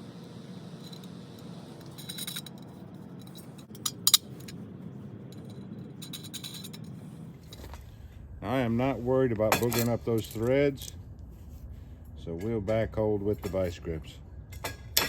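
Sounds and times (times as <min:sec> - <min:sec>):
steady low hum: 0:00.0 - 0:15.0
metal tools clinking: 0:00.7 - 0:04.6, 0:05.2 - 0:07.9, 0:09.5 - 0:11.0.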